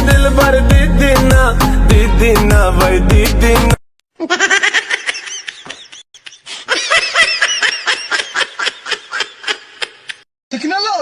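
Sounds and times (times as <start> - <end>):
high-pitched giggling laughter: 4.2 - 10.2.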